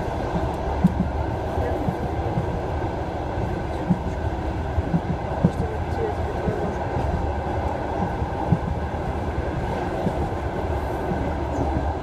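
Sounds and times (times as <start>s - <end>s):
train wheels rumbling on rails: 0.0s - 12.0s.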